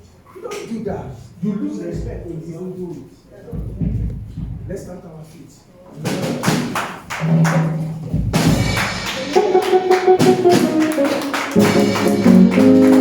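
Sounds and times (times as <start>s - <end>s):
rhythmic percussion hits: 6.0s - 13.0s
held chords: 8.7s - 13.0s
deep bass notes: 11.6s - 13.0s.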